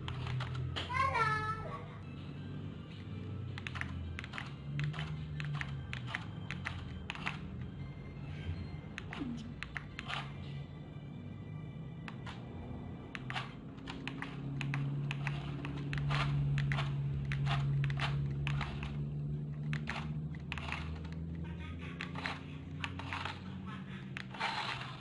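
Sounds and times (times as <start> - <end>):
plastic toy clicks and clacks: 0.0 - 0.9, 3.5 - 7.7, 9.0 - 10.4, 12.0 - 12.4, 13.1 - 25.0.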